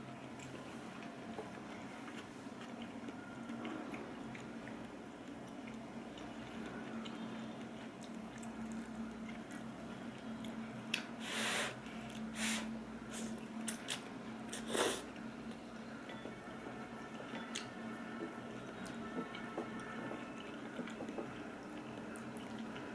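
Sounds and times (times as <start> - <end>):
quiet chewing: 0.2 - 11.1.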